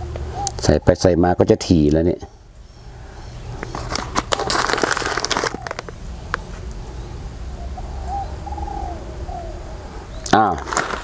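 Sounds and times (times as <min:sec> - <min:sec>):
seeds clicking: 0:03.6 - 0:06.8, 0:10.2 - 0:11.0
plastic bag crinkling: 0:03.7 - 0:06.0, 0:10.5 - 0:11.0.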